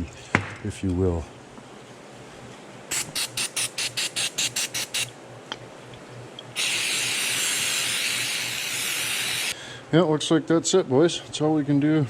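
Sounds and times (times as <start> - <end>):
pressurised gas hissing: 6.6 - 9.6.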